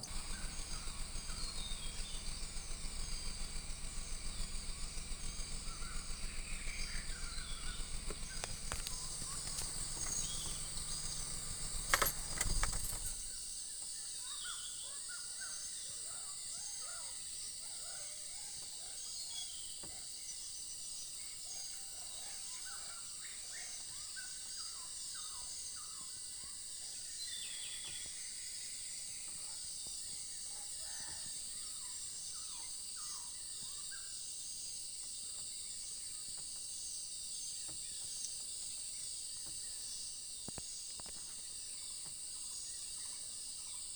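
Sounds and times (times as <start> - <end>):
insects shrilling: 0.0 - 13.5
small birds chirping: 0.0 - 43.9.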